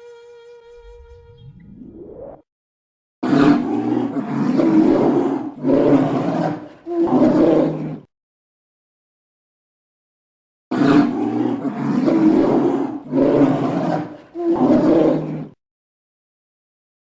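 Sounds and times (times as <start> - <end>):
polar bear growling and roaring: 3.2 - 8.1, 10.7 - 15.6.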